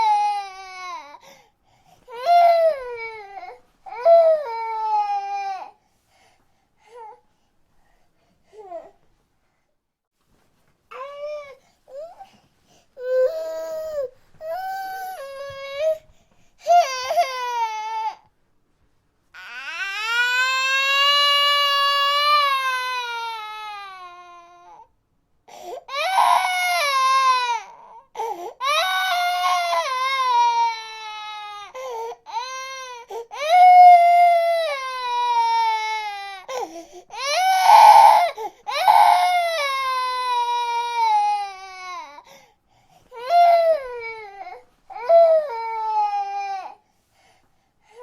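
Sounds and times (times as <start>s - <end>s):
infant crying: 0.0s - 1.4s, 2.1s - 5.8s, 13.0s - 16.0s, 16.6s - 18.2s, 19.4s - 24.9s, 25.5s - 42.4s, 43.1s - 46.8s.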